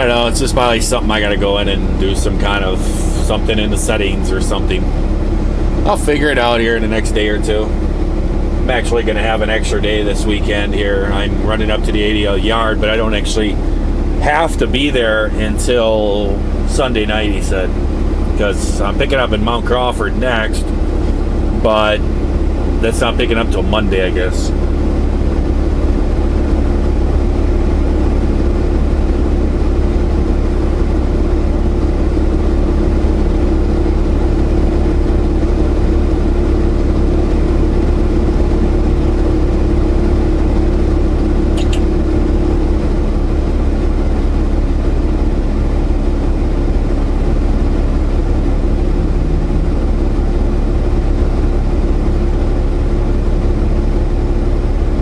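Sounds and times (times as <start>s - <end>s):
diesel engine drone: 0.0s - 55.0s
road noise: 46.1s - 53.4s.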